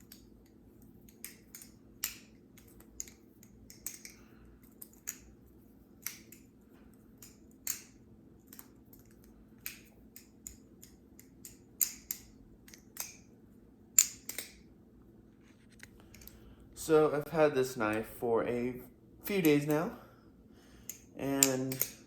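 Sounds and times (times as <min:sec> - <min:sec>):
butterfly knife clicking: 0:07.2 - 0:13.2, 0:14.0 - 0:14.6, 0:20.9 - 0:22.0.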